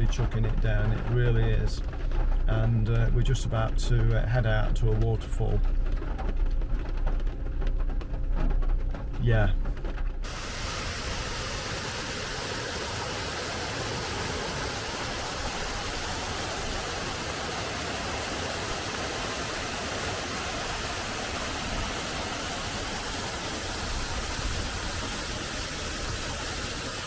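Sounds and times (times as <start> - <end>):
waterfall rushing: 10.2 - 27.0.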